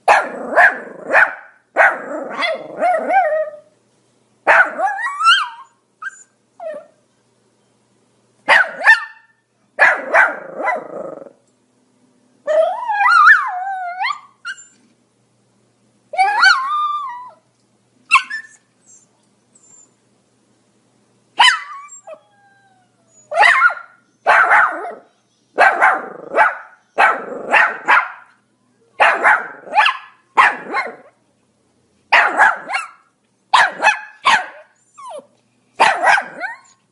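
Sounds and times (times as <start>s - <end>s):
small dog barking: 0.0s - 3.3s, 4.4s - 5.6s, 8.5s - 11.0s, 21.4s - 21.9s, 23.3s - 28.4s, 29.0s - 31.2s, 32.1s - 35.2s, 35.8s - 36.8s
dog whining: 4.7s - 7.0s, 12.5s - 14.8s, 16.2s - 17.4s, 18.1s - 20.0s, 21.4s - 25.1s, 34.8s - 35.4s, 36.2s - 36.8s.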